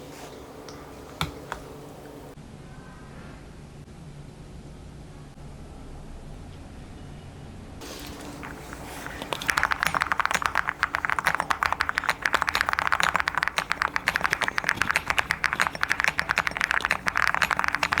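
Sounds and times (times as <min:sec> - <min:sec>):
mechanical keyboard typing: 0:07.8 - 0:18.0.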